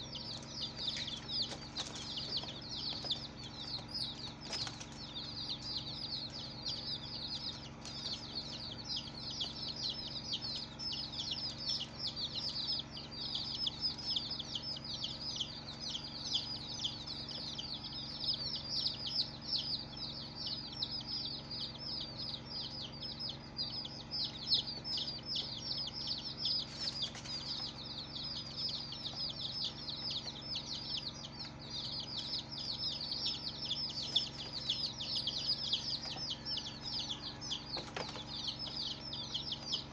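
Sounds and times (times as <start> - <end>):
baby chicks peeping: 0.0 - 39.9.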